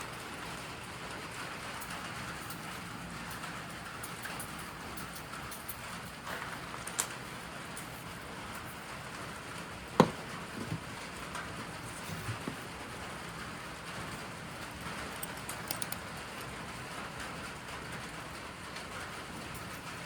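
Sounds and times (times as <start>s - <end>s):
steady rain falling: 0.0s - 20.0s
sharp knocks: 10.0s - 10.8s.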